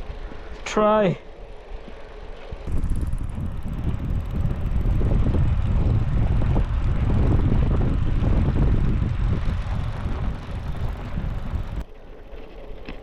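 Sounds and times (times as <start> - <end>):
bicycle rolling noise: 0.0 - 13.0
wind buffeting microphone: 2.6 - 11.8.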